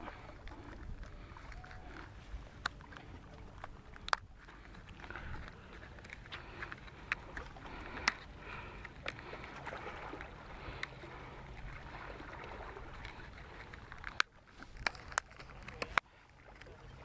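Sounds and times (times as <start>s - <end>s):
small waves lapping: 0.0s - 17.0s
fishing tackle clicks: 0.4s - 9.5s, 12.9s - 16.0s.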